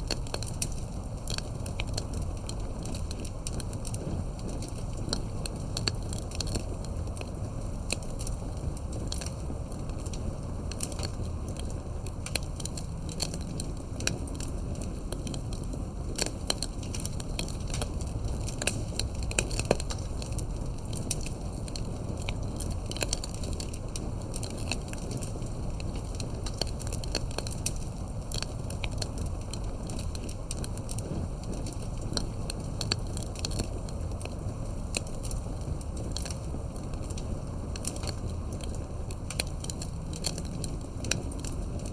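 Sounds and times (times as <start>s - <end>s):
burning wood crackling and popping: 0.0s - 41.9s
campfire flames rushing: 0.0s - 41.9s.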